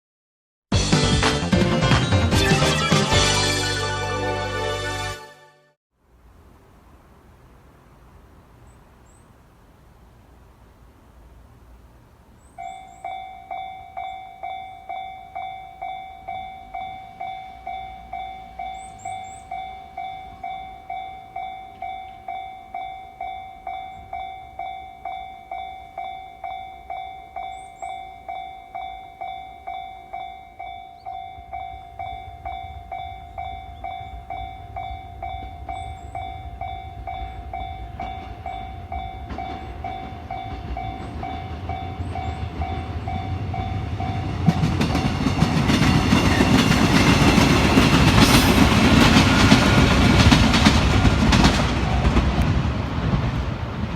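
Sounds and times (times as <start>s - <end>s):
train rumble: 11.2s - 53.9s
level-crossing electronic bell: 12.6s - 44.4s.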